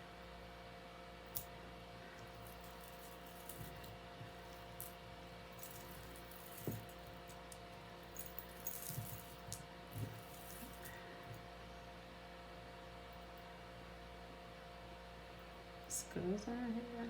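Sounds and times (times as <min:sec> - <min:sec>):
steady low hum: 0:00.0 - 0:17.0
jewelry chains clicking and rustling: 0:02.2 - 0:11.0.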